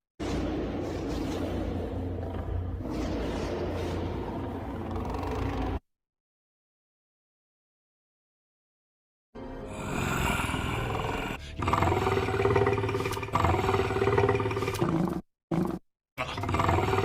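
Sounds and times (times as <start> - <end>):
dinosaur roars: 0.7 - 5.8, 9.7 - 17.0.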